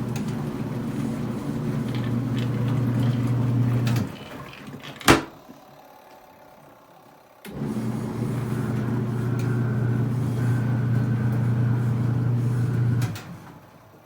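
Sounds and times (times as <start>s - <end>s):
washing machine motor humming: 0.0s - 14.0s.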